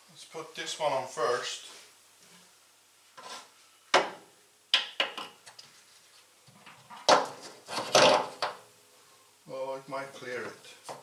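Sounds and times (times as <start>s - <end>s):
metal clunks and rattle: 6.7s - 8.6s.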